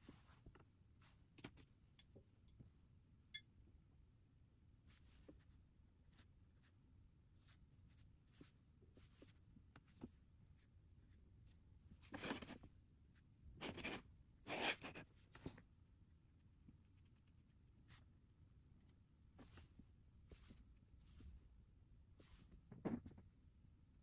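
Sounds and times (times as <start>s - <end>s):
paintbrush swishing on paper: 7.4s - 12.4s, 16.8s - 21.4s, 22.2s - 22.6s.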